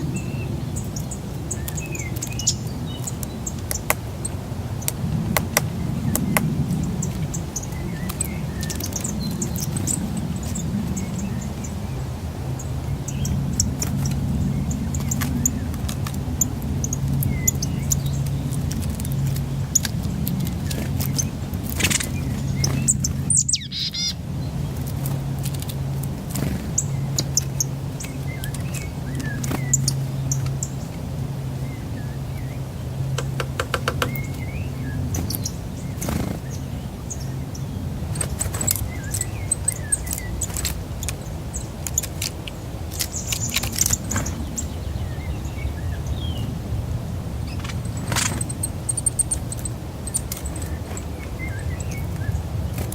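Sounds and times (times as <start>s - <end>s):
small birds chirping: 0.0s - 52.9s
steady low hum: 0.0s - 52.9s
sharp clicks and taps: 33.2s - 34.4s.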